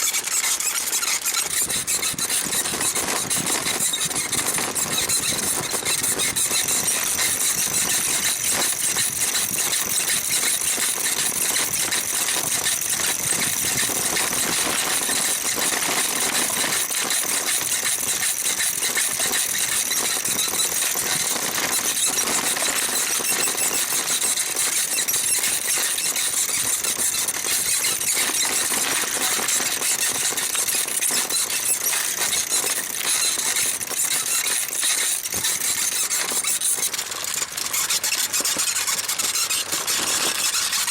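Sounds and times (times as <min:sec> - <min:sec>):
bicycle saddle squeaking: 0:00.0 - 0:40.9.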